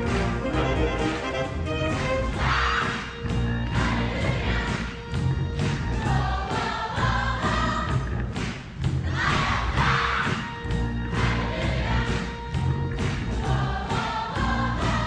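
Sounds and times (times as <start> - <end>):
wind orchestra playing funk: 0.0 - 4.5
bass beat: 0.0 - 15.0
group of voices singing: 2.2 - 5.0, 5.9 - 8.2, 9.0 - 10.5, 11.1 - 12.5, 13.3 - 15.0.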